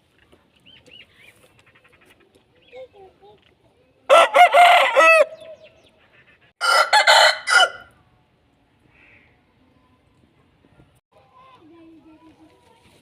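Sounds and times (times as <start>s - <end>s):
rooster crowing: 4.1s - 5.4s, 6.6s - 7.9s.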